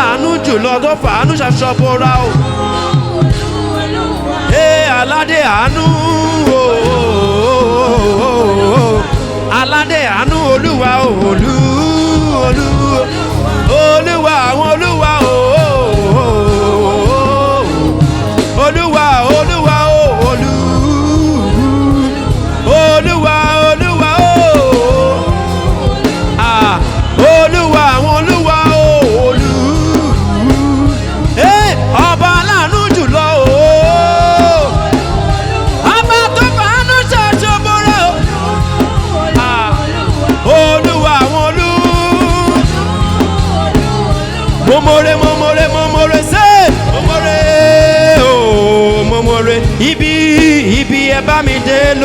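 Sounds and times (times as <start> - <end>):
live band with bass and drums: 0.0 - 52.0.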